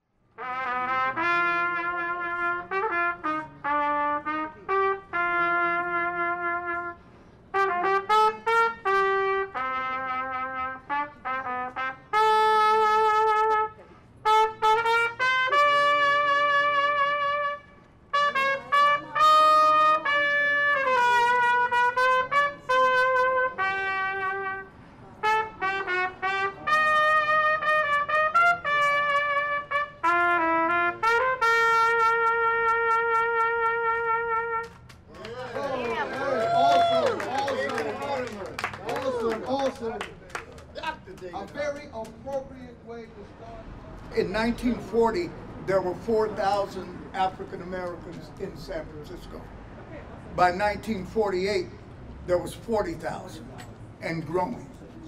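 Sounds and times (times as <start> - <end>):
horn playing a melody: 0.4 - 34.8.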